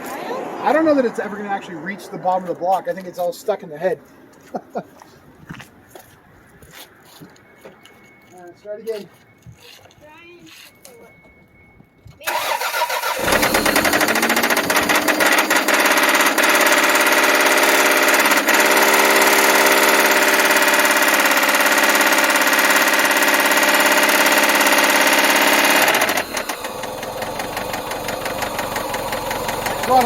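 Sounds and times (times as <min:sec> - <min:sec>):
car engine revving: 0:12.6 - 0:30.0
rapid metallic engine knock: 0:13.3 - 0:30.0.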